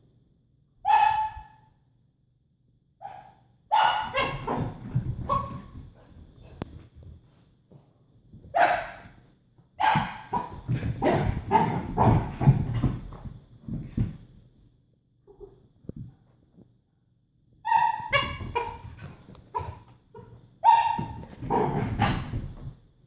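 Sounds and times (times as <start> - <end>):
puppy barking: 0.9 - 1.6, 3.0 - 5.7, 8.6 - 9.0, 9.8 - 12.2, 17.7 - 18.8, 20.6 - 21.2.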